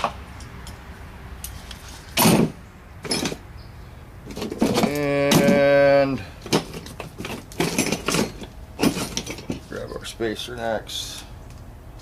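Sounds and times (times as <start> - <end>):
metal tools clanking and scraping: 1.4 - 3.4, 4.3 - 10.2.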